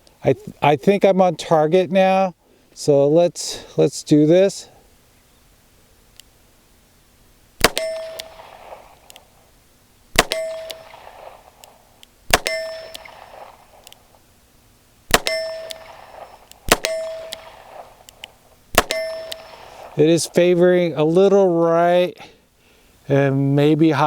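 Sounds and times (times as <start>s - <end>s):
revolver gunshots with metallic ring: 7.6s - 9.0s, 10.1s - 11.6s, 12.3s - 13.8s, 15.1s - 18.0s, 18.7s - 20.0s.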